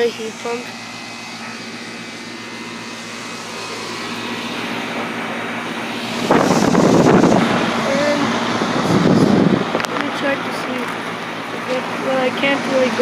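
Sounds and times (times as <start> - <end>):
air conditioner unit humming: 0.0 - 13.0
sudden loud rushing noise: 1.1 - 9.8.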